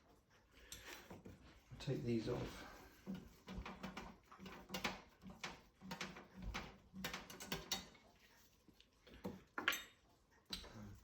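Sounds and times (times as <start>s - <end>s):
small metallic clicks and taps: 3.1s - 8.0s.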